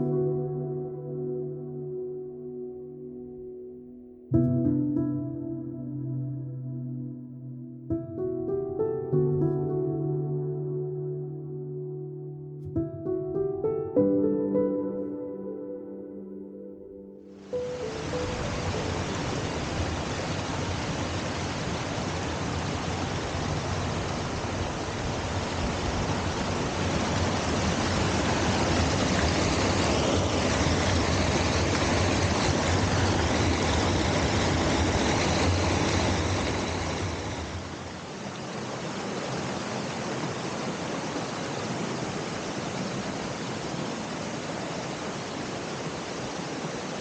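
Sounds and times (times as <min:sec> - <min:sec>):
waterfall rushing: 0:17.3 - 0:47.0.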